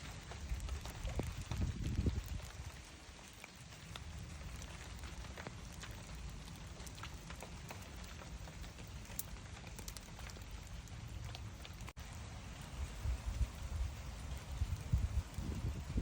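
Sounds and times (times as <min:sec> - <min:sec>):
light rain hissing: 0:00.0 - 0:16.0
raindrops tapping: 0:00.0 - 0:16.0.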